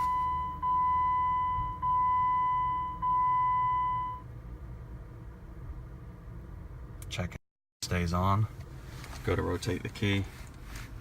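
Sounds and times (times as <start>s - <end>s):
car dashboard warning chime: 0.0s - 4.2s.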